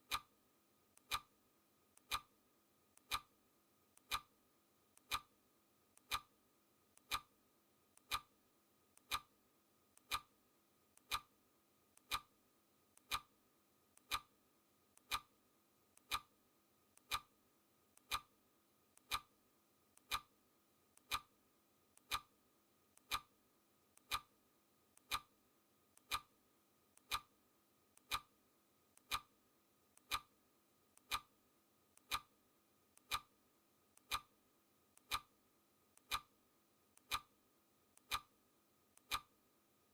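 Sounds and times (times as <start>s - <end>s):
clock ticking: 0.1s - 0.3s, 1.0s - 1.3s, 2.0s - 2.3s, 3.0s - 3.3s, 4.0s - 4.3s, 5.0s - 5.3s, 6.0s - 6.3s, 7.0s - 7.3s, 8.0s - 8.3s, 9.0s - 9.3s, 10.0s - 10.3s, 11.0s - 11.3s, 12.0s - 12.3s, 13.0s - 13.3s, 14.0s - 14.3s, 15.0s - 15.3s, 16.0s - 16.3s, 17.0s - 17.3s, 18.0s - 18.3s, 19.0s - 19.3s, 20.0s - 20.3s, 21.0s - 21.3s, 22.0s - 22.3s, 23.0s - 23.3s, 24.0s - 24.3s, 25.0s - 25.3s, 26.0s - 26.3s, 27.0s - 27.3s, 28.0s - 28.3s, 29.0s - 29.3s, 30.0s - 30.3s, 31.0s - 31.3s, 32.0s - 32.3s, 33.0s - 33.3s, 34.0s - 34.3s, 35.0s - 35.3s, 36.0s - 36.3s, 37.0s - 37.3s, 38.0s - 38.3s, 39.0s - 39.3s.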